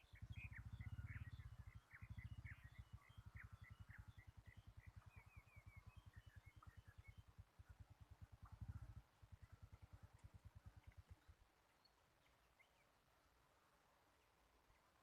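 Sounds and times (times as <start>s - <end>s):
fast low throbbing pulse: 0.0s - 10.8s
faint bird chirping: 0.0s - 15.0s.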